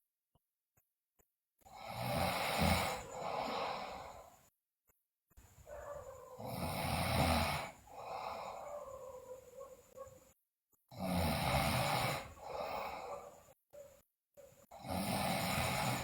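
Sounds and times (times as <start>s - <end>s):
girl snoring loudly: 1.7s - 4.4s, 5.7s - 9.2s, 10.9s - 13.4s, 14.7s - 16.0s.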